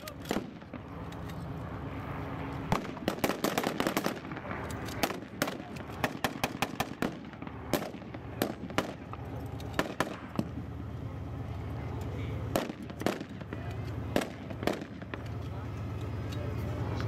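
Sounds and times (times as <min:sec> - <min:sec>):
steady rumble: 0:00.0 - 0:17.0
guns firing blanks: 0:02.6 - 0:10.9, 0:12.0 - 0:16.9.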